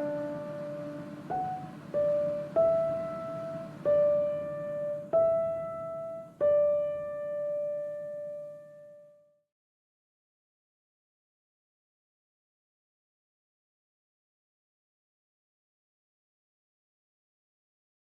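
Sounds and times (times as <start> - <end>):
slow piano notes: 0.0 - 9.3.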